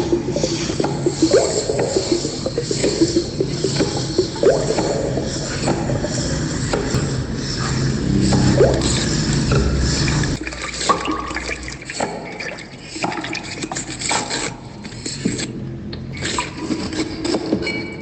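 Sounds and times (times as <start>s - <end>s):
low rumble: 0.0s - 11.8s
water splashing: 0.0s - 14.6s.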